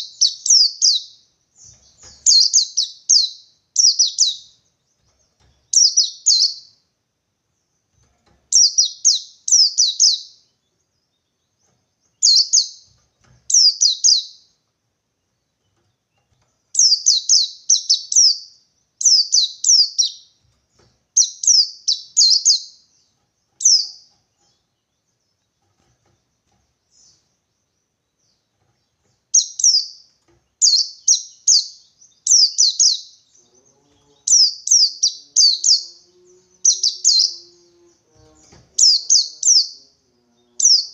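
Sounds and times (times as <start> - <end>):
bird singing high falling notes: 30.6 - 40.9.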